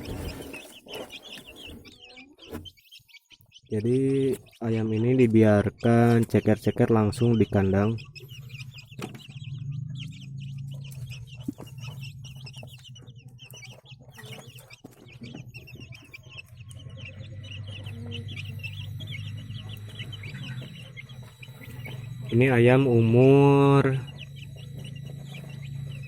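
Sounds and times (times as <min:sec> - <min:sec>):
chicks cheeping: 0:00.0 - 0:26.0
steady low hum: 0:16.6 - 0:26.0.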